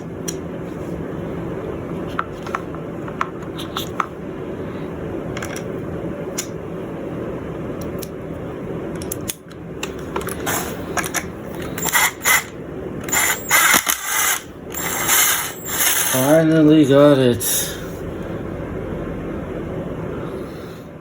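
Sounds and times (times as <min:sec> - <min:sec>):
steady mechanical hum: 0:00.0 - 0:21.0
screw extractor clicking: 0:11.1 - 0:16.2
tool scraping rasps: 0:13.1 - 0:16.3.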